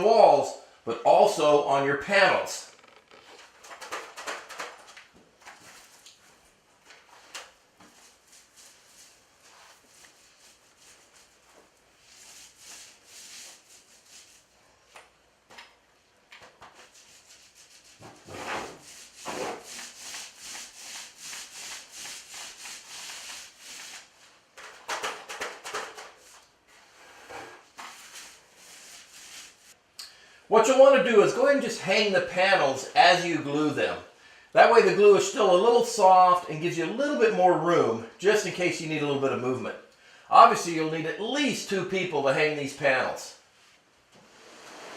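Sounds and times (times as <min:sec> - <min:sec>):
paint roller rubbing strokes: 0:07.9 - 0:14.6, 0:16.7 - 0:24.4, 0:26.2 - 0:29.8, 0:44.2 - 0:44.9.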